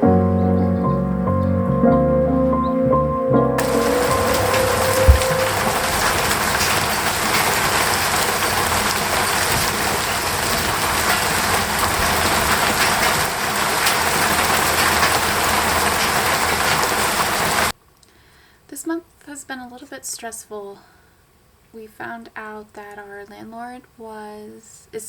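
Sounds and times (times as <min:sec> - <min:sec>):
raindrop ticks: 0:03.6 - 0:17.7
steady rain falling: 0:03.6 - 0:17.8.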